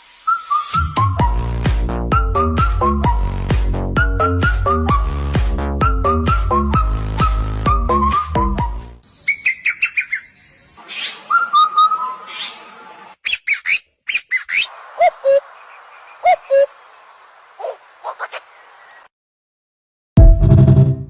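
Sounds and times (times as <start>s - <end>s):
beat-driven music: 0.8s - 9.0s
small birds chirping: 9.0s - 19.1s.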